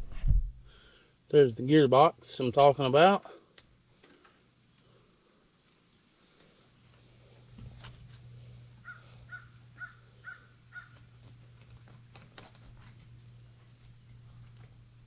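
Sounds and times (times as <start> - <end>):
low hum: 0.0 - 1.0
crow cawing: 8.8 - 11.0.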